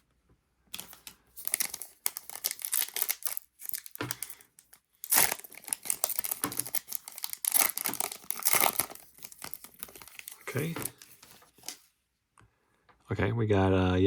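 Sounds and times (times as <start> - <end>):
plastic wrapper crinkling and tearing: 0.8 - 11.9.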